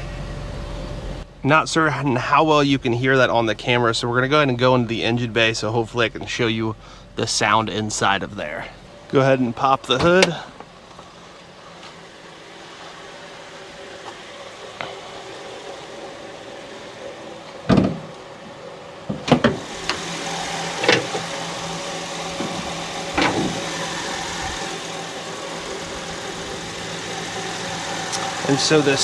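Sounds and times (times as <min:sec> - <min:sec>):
car engine idling with whine: 0:00.0 - 0:29.0
hood thumps and clunks: 0:09.8 - 0:12.0, 0:17.4 - 0:24.8.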